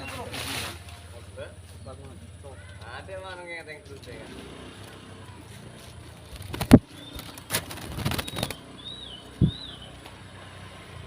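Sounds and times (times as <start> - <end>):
bird wing flaps: 6.2 - 8.6
faint whistled bird notes: 6.8 - 7.4, 8.2 - 10.0.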